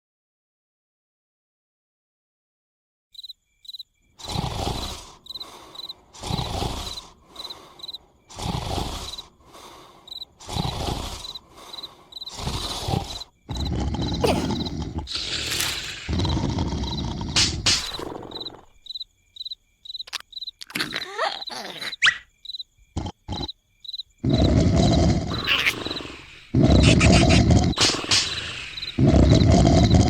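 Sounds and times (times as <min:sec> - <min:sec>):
crickets chirping: 0:03.2 - 0:30.0
cartoon snoring: 0:04.2 - 0:18.8, 0:20.6 - 0:22.2, 0:22.9 - 0:23.6, 0:24.2 - 0:30.0.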